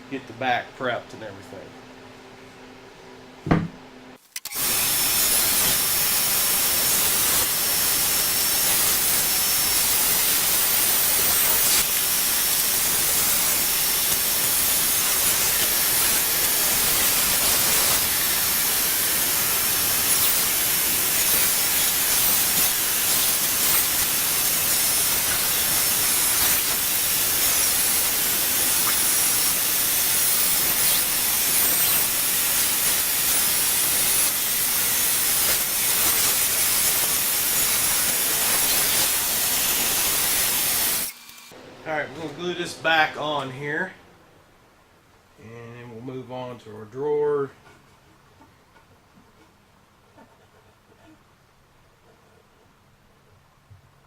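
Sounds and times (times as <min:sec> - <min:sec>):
power tool hissing: 0:04.2 - 0:41.6.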